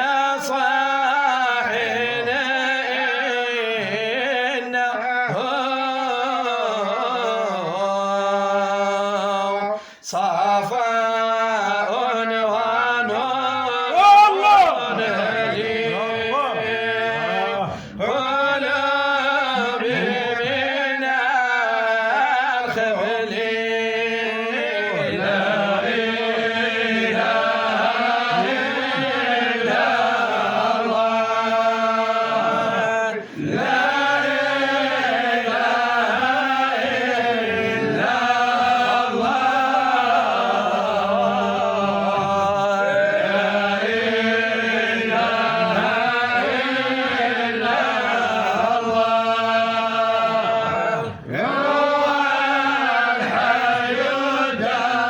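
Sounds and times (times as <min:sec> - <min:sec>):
man chanting in held notes: 0:00.0 - 0:27.4.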